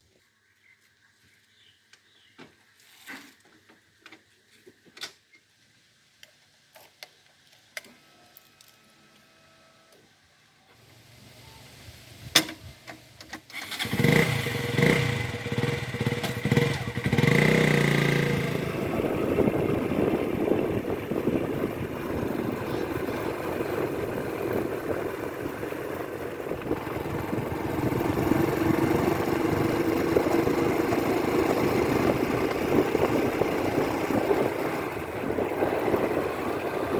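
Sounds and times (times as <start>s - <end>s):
diesel engine starting and running: 12.5s - 36.9s.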